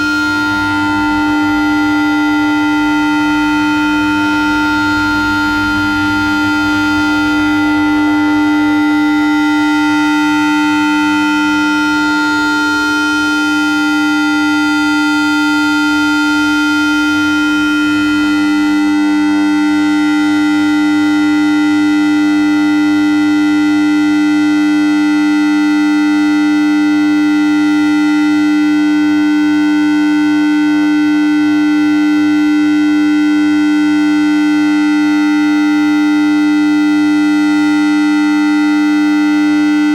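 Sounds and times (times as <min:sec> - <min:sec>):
steady electronic drone: 0:00.0 - 0:19.9.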